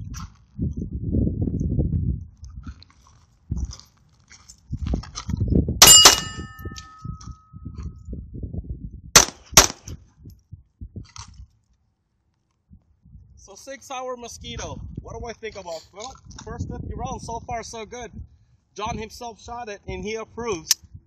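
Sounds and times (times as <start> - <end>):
pistol shots: 5.8 - 7.0, 9.2 - 9.9
metallic ring: 5.8 - 7.6.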